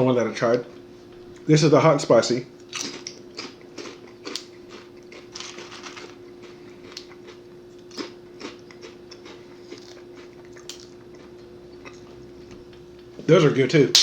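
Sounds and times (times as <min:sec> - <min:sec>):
steady hum: 0:00.0 - 0:14.0
crunchy food being eaten: 0:02.6 - 0:13.1.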